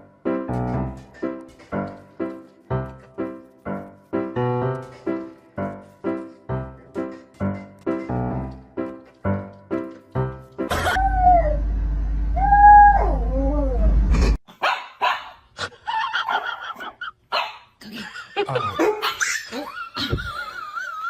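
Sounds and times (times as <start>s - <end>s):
dog whining and yipping: 10.7s - 11.6s, 12.4s - 14.0s.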